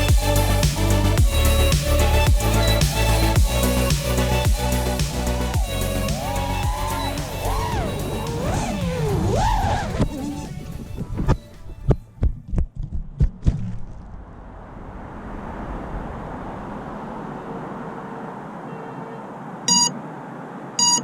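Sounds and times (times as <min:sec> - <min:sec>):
steady hiss: 0:00.0 - 0:08.4
high electronic beep: 0:19.7 - 0:20.0, 0:20.8 - 0:21.0.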